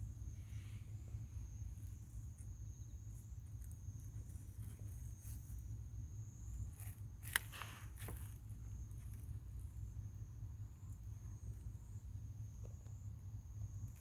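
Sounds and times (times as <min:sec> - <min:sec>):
faint high-pitched whine: 0:00.0 - 0:14.0
steady low rumble: 0:00.0 - 0:14.0
soft rustles: 0:06.7 - 0:09.3.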